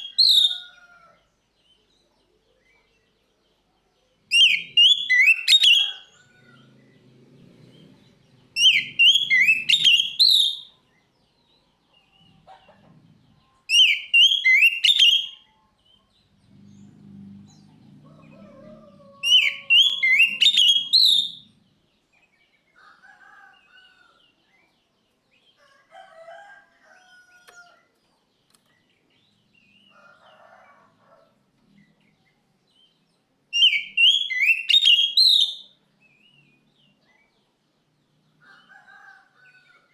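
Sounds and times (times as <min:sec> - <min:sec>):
faint bird chirps: 0:01.7 - 0:22.9
bird singing whistled phrases: 0:04.3 - 0:06.0, 0:08.6 - 0:10.7, 0:13.7 - 0:15.4, 0:19.2 - 0:21.4, 0:33.6 - 0:35.7.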